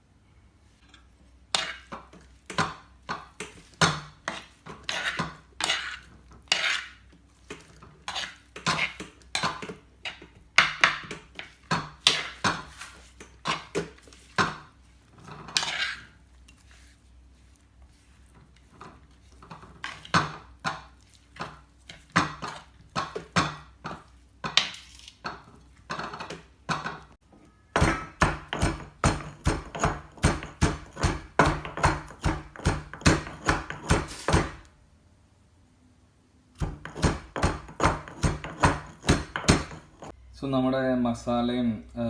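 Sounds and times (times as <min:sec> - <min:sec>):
stone pounding in stone mortar: 0:27.8 - 0:34.6, 0:36.6 - 0:40.2.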